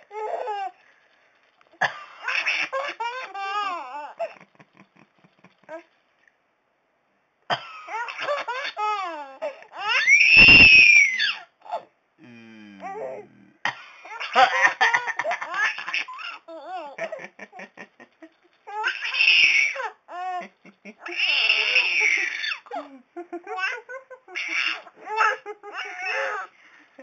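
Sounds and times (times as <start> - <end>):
baby laughing: 2.2 - 5.9, 7.8 - 10.6, 14.0 - 17.8, 18.6 - 26.5
baby squealing: 7.9 - 11.8, 18.7 - 20.4, 21.0 - 22.8, 24.4 - 26.5.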